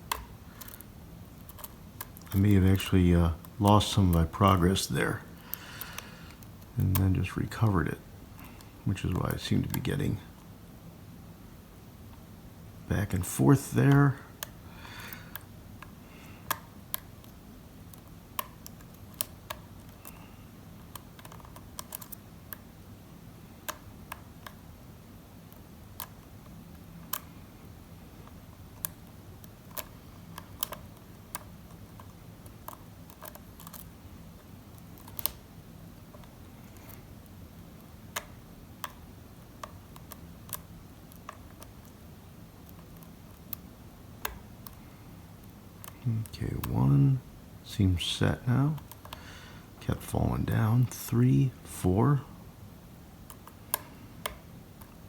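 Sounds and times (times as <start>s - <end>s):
lock pick clicking on pins: 28.3s - 33.9s.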